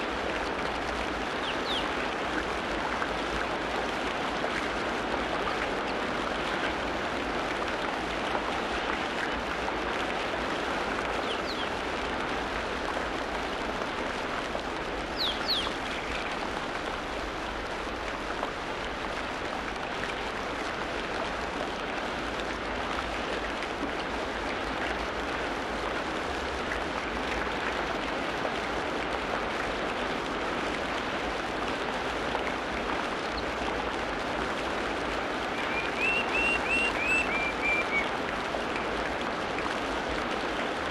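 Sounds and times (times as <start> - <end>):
steady rain falling: 0.0 - 40.9
high bird chirps: 35.6 - 38.0.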